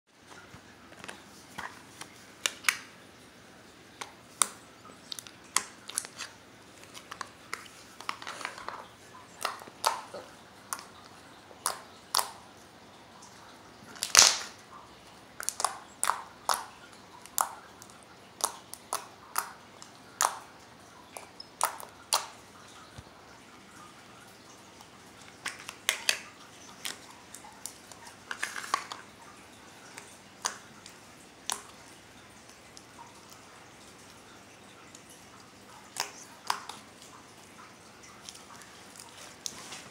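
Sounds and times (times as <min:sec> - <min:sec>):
slime squishing with clicks and pops: 0:09.3 - 0:11.0, 0:11.6 - 0:12.4, 0:14.0 - 0:14.5, 0:15.4 - 0:20.5, 0:21.1 - 0:22.4, 0:25.4 - 0:26.2, 0:35.8 - 0:37.1.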